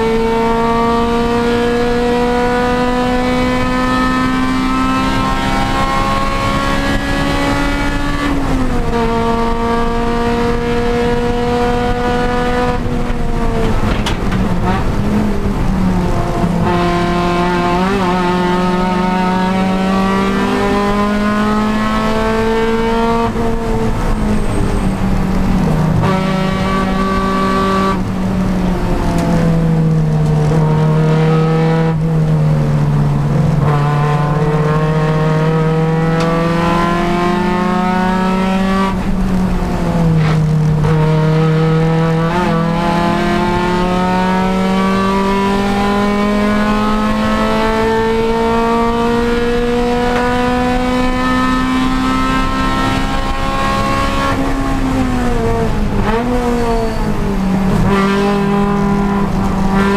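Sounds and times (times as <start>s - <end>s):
race car engine revving: 0.0s - 59.9s.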